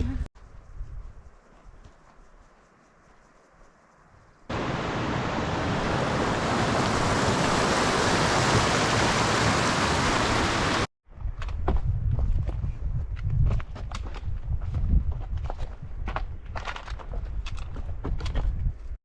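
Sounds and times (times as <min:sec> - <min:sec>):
rushing water: 0:04.5 - 0:10.9.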